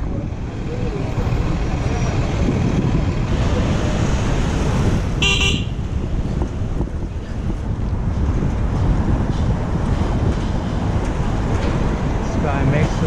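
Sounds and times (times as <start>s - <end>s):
city traffic rumble: 0.0s - 13.0s
wind on microphone: 0.0s - 13.0s
car horn toot: 5.2s - 5.8s.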